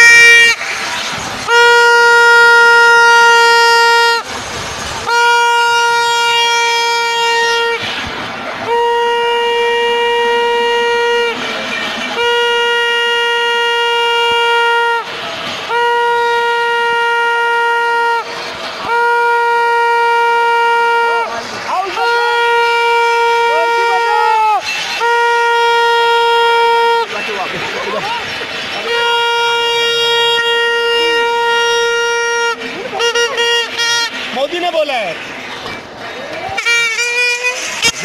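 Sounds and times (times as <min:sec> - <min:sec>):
conch shell blasts: 0:00.0 - 0:04.3, 0:05.0 - 0:08.1, 0:21.9 - 0:27.1, 0:36.6 - 0:38.0.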